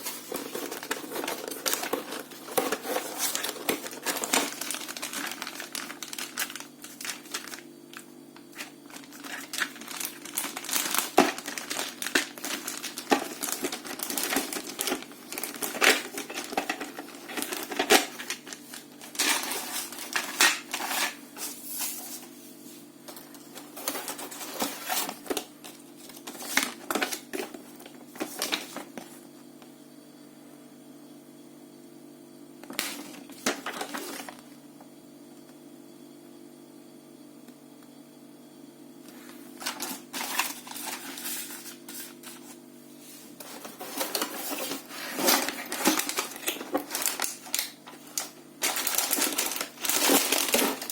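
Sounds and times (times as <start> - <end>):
packaging crinkling: 0.0 - 22.3, 23.2 - 29.2, 32.7 - 34.4, 39.6 - 42.6, 43.3 - 50.9.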